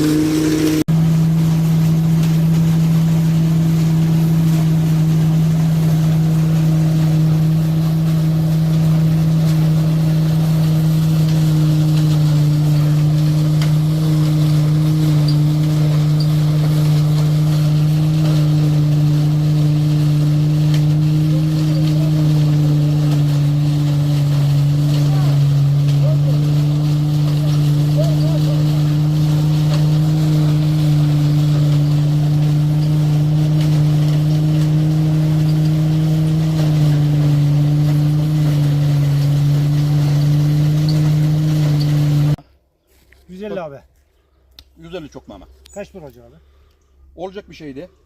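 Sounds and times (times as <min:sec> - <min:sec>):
motor humming: 0:00.0 - 0:42.4.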